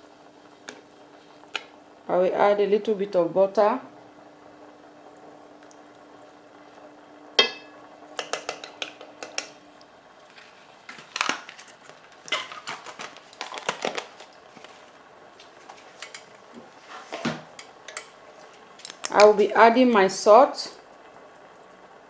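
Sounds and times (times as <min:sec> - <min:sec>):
metal clank ringing: 0:07.4 - 0:07.8
utensils clinking on pot and dishes: 0:07.4 - 0:09.5.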